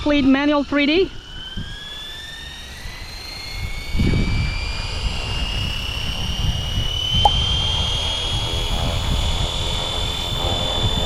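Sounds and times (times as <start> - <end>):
helicopter motor and rotor whine: 0.0 - 11.0
wind buffeting microphone: 2.9 - 11.0.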